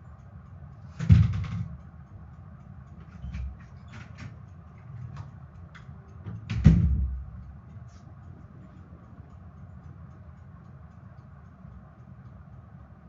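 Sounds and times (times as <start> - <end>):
ceiling fan humming: 0.0 - 13.0
ceiling fan knocks: 1.0 - 1.8, 6.2 - 7.4.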